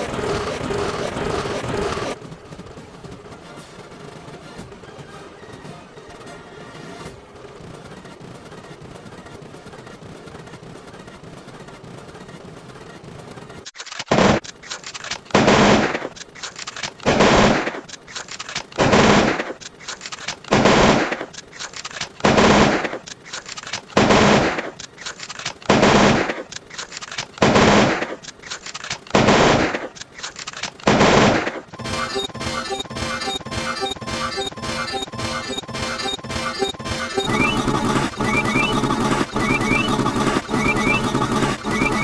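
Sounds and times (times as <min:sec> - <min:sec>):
rapid rhythmic beats: 0:31.8 - 0:42.0.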